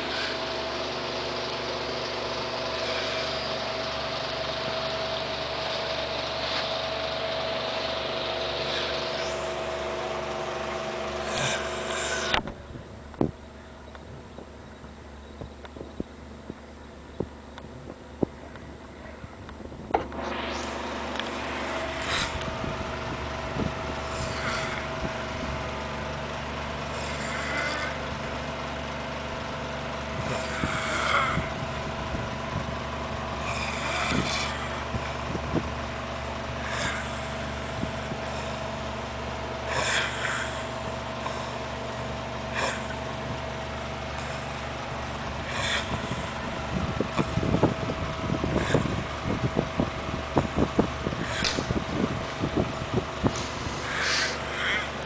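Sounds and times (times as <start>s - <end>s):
steady hum: 0.0s - 55.0s
man snoring: 11.1s - 12.4s, 24.0s - 25.2s, 26.9s - 28.1s, 30.2s - 31.6s, 33.4s - 34.9s, 36.6s - 38.0s, 39.6s - 41.0s.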